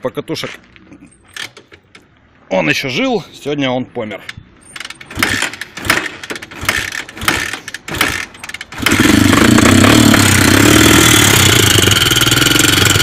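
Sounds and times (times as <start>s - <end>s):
motorcycle engine cranking and running: 4.2s - 13.0s
engine knocking: 8.8s - 13.0s.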